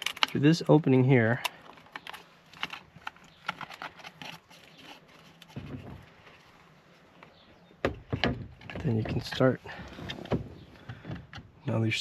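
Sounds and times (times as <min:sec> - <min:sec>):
wiring clicks and rustling: 0:00.0 - 0:06.6.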